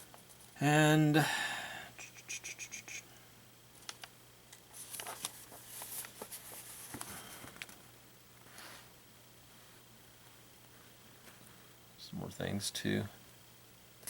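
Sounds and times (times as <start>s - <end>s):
paper pages rustling: 4.7s - 7.8s.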